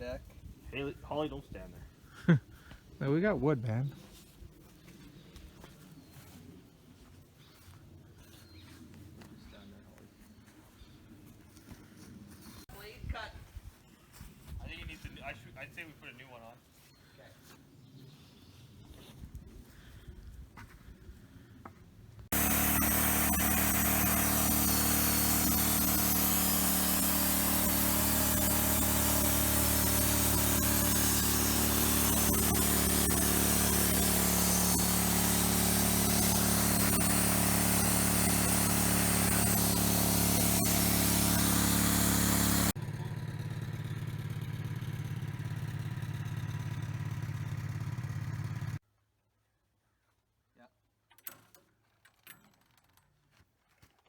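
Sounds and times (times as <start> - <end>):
saw cutting through log: 22.3 - 42.8
sawmill engine running: 22.3 - 48.8.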